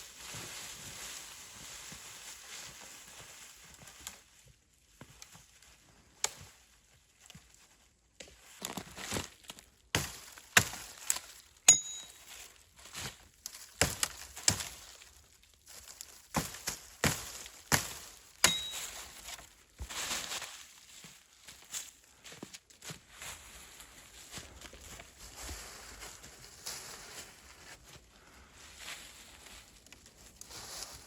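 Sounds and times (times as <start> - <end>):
wood chopping strikes: 10.0 - 12.2, 13.8 - 14.8, 16.3 - 19.0
high metallic ring: 11.7 - 12.5, 18.4 - 19.2.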